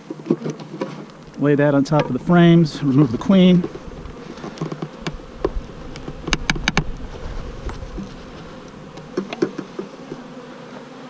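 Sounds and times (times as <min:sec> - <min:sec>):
bees buzzing in swarm: 0:00.0 - 0:11.0
sharp clicks and knocks: 0:04.4 - 0:06.9, 0:08.9 - 0:10.2.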